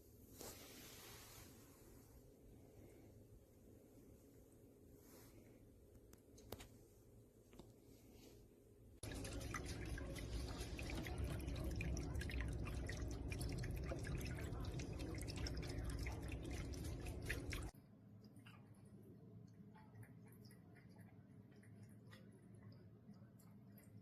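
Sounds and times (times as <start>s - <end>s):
water trickling and dripping: 9.0s - 24.0s.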